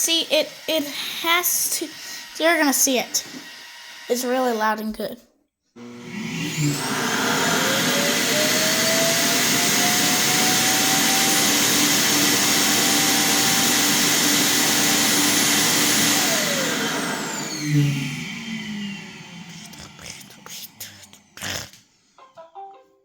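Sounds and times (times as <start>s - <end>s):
loud suction motor whine: 0.2s - 4.2s, 5.8s - 21.4s.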